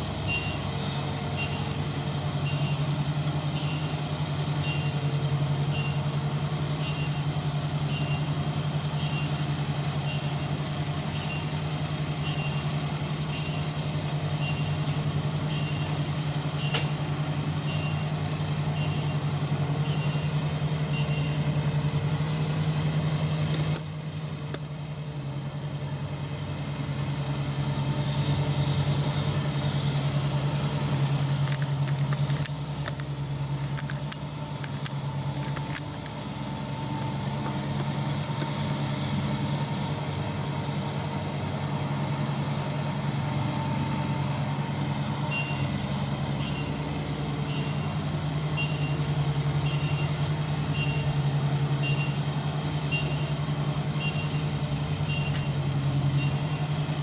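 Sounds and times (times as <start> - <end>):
harvester engine running: 0.0 - 57.0
high warning beep: 0.3 - 0.6, 17.6 - 21.5, 48.6 - 49.0, 49.6 - 51.2, 51.8 - 52.2, 52.9 - 53.4.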